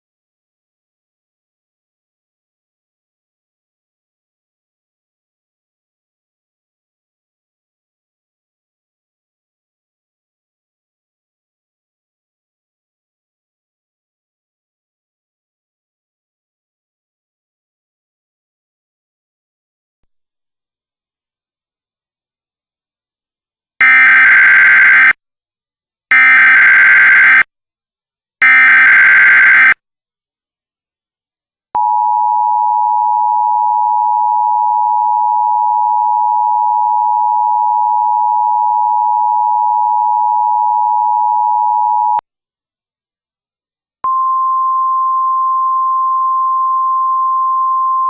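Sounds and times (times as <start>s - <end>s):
data bursts: 28.4s - 29.8s.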